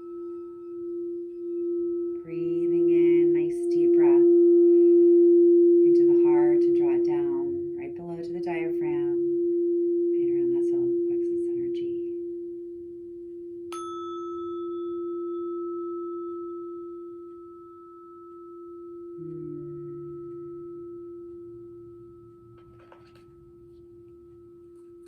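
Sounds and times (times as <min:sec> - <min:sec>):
higher struck ringing tone: 0:00.0 - 0:11.1, 0:12.1 - 0:25.0
low pure ringing tone: 0:00.0 - 0:25.0.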